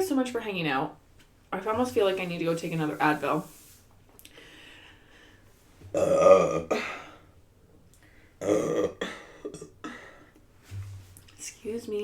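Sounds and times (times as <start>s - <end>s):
woman burping: 5.9s - 7.2s, 8.4s - 10.0s.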